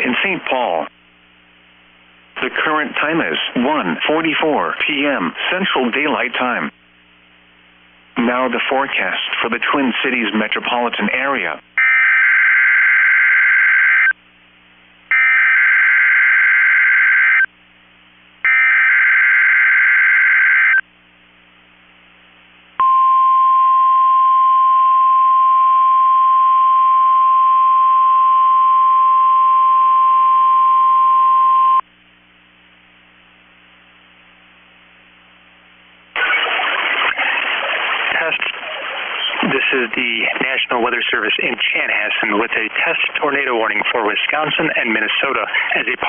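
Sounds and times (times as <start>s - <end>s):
faint steady hum: 0.0s - 36.6s
steady alarm beep tone: 22.8s - 31.8s.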